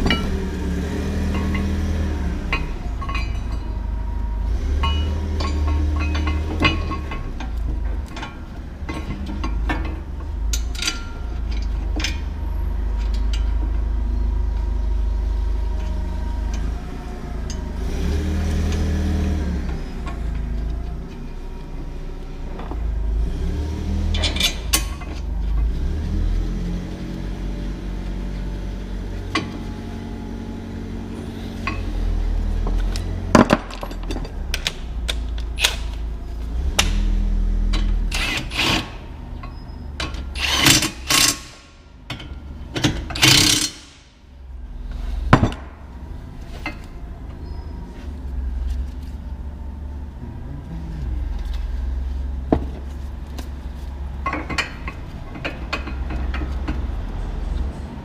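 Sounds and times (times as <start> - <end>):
metal clinks and knocks: 0.0 - 0.5, 1.2 - 14.7, 31.6 - 44.2, 52.4 - 57.7
steady low rumble: 38.9 - 58.0.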